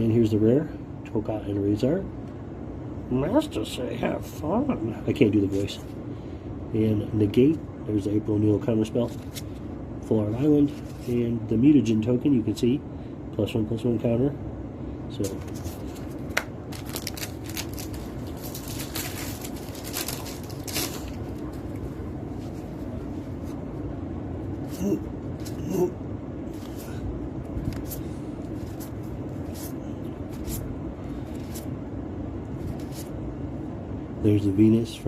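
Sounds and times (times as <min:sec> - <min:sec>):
steady low hum: 0:00.0 - 0:35.0
card packaging crinkling: 0:15.2 - 0:23.6.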